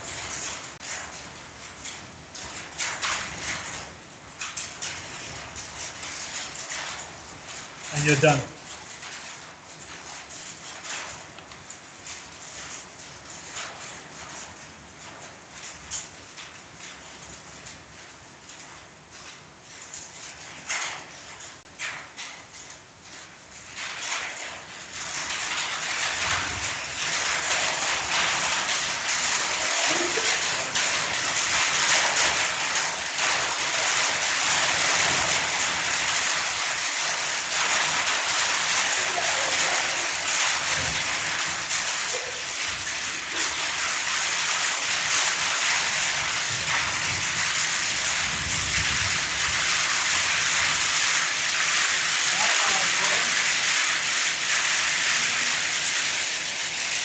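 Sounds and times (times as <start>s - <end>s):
loud steady hiss: 7.9s - 8.6s, 24.5s - 57.0s.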